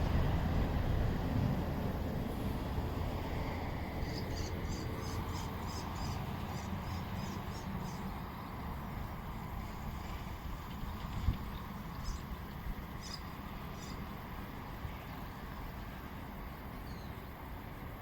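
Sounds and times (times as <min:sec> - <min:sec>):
steady low rumble: 0:00.0 - 0:06.8.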